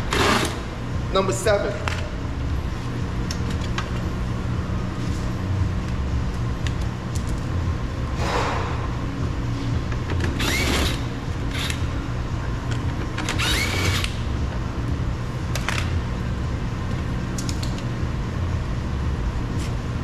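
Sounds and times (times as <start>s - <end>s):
steady low hum: 0.0s - 20.0s
cordless drill whirring: 10.4s - 11.8s.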